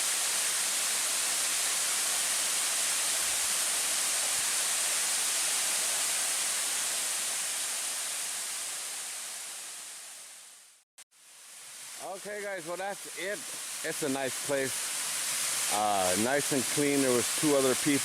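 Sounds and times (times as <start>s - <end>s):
waterfall rushing: 11.5s - 18.0s.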